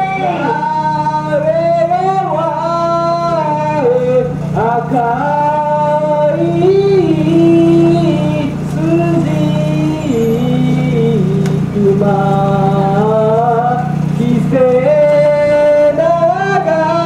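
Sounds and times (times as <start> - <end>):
man singing a chant: 0.0 - 17.0
steady low hum: 0.0 - 17.0.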